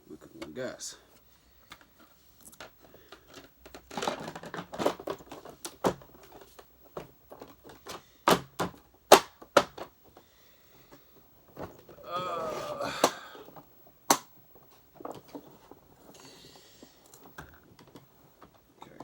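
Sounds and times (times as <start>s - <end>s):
rustling: 0.1s - 8.2s, 13.4s - 19.0s
plastic parts clicking and knocking: 1.6s - 10.2s, 13.0s - 19.0s.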